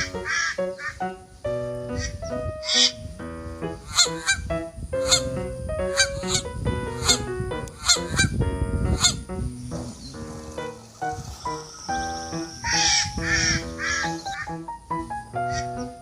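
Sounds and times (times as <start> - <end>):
duck quacks: 0.0 - 1.0, 3.8 - 4.4, 7.0 - 8.3, 12.7 - 14.6
background music: 0.0 - 16.0.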